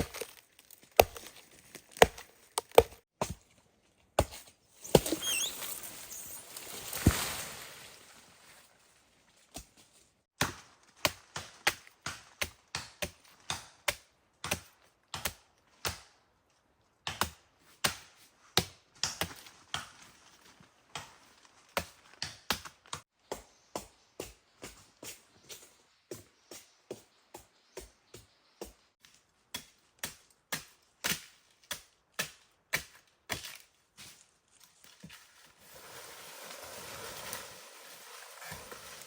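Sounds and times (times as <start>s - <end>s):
blade chopping strikes: 1.0s - 1.3s, 2.0s - 3.0s.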